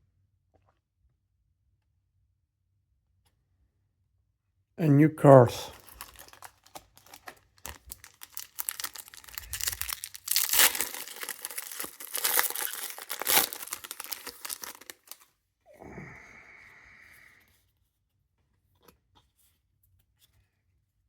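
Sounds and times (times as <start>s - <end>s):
foil wrapper crinkling: 5.7s - 15.3s.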